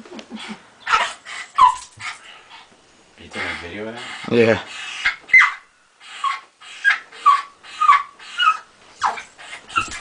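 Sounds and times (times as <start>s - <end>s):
dog whining and yipping: 0.8s - 2.3s, 4.8s - 10.0s.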